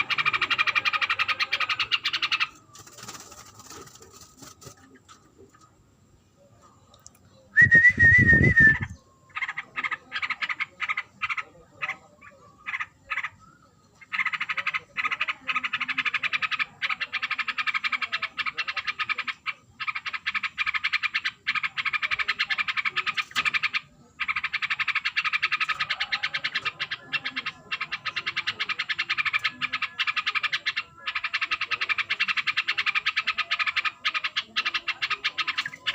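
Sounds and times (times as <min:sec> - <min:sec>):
bird stuttering chatter: 0:00.0 - 0:05.7, 0:07.7 - 0:13.4, 0:14.0 - 0:35.9
loud wavering whistle: 0:07.6 - 0:08.9.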